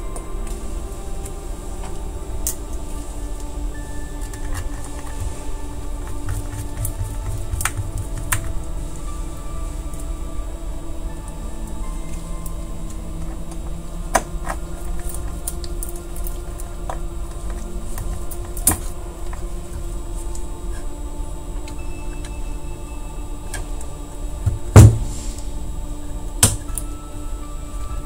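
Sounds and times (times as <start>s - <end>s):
loud knock: 24.5s - 25.1s.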